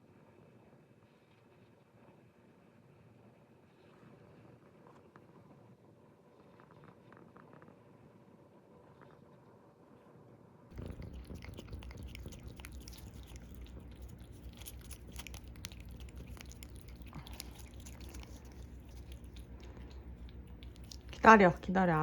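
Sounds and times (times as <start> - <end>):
cat purring: 10.7 - 22.0.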